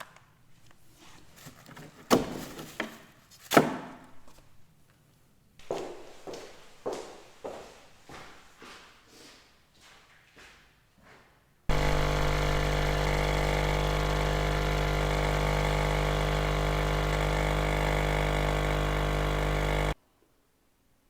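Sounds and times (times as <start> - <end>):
machine motor humming: 11.7 - 20.0.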